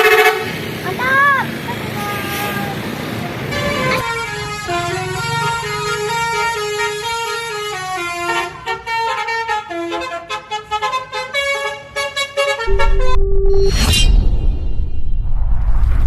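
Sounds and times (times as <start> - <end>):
musical bus horn melody: 0.0 - 0.5, 3.5 - 13.7
loud low rumble: 12.6 - 16.0.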